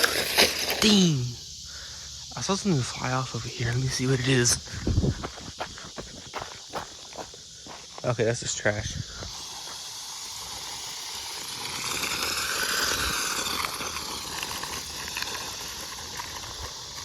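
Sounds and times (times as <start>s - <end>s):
toy truck tyres on pavement: 0.0s - 17.0s
electric motor whine: 9.0s - 17.0s.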